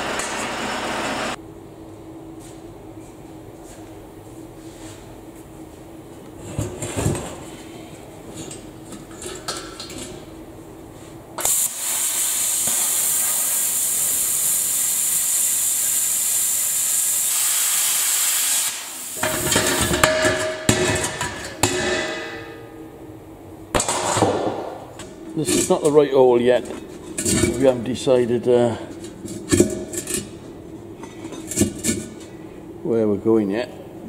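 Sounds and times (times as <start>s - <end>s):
high-pitched hiss: 11.4s - 19.7s
metal clattering and clanking: 19.2s - 22.7s.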